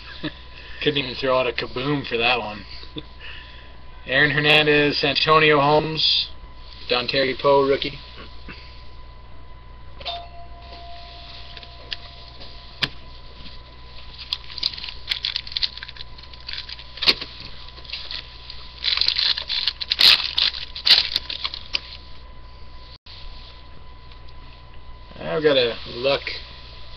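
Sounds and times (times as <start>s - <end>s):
foil pack crinkling and tearing: 14.0s - 22.1s.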